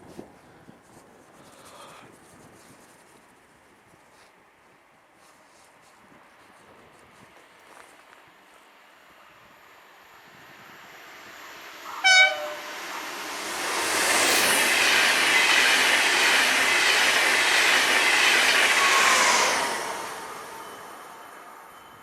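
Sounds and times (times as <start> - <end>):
train wheel and rail noise: 6.4 - 22.0
train horn blast: 11.8 - 13.2.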